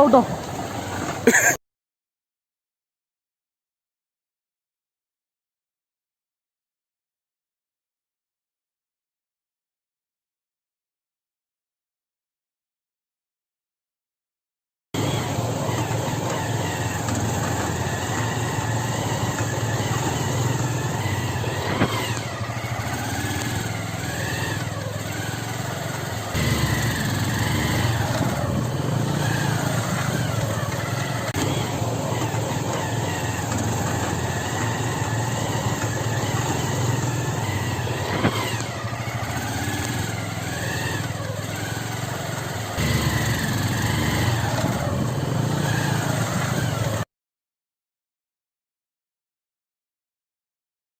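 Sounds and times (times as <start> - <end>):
motorcycle engine running: 0.0 - 1.6, 15.0 - 47.0.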